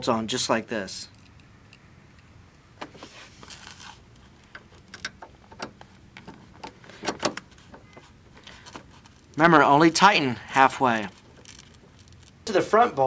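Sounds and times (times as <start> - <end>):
bolt clicking and scraping: 1.1 - 9.4, 10.8 - 12.4.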